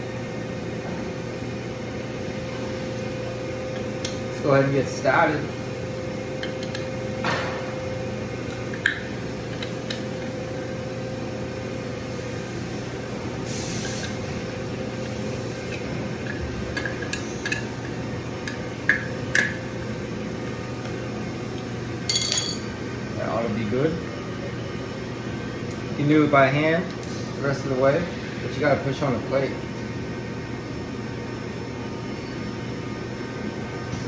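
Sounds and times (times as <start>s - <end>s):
shop machinery hum: 0.0s - 34.0s
metal clinks and knocks: 22.1s - 22.7s.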